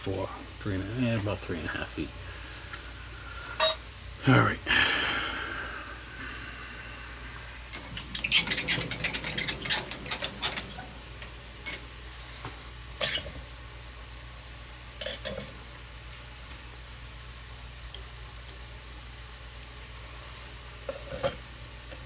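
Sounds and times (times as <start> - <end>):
metal tools clinking: 3.6 - 3.8.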